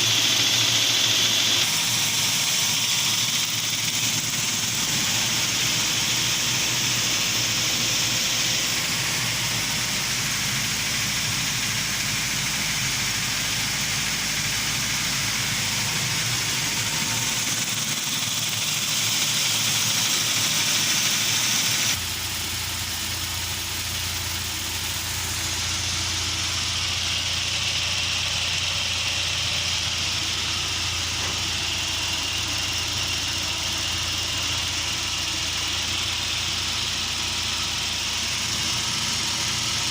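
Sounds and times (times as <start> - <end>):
engine idling with a knock: 29.6 - 39.9.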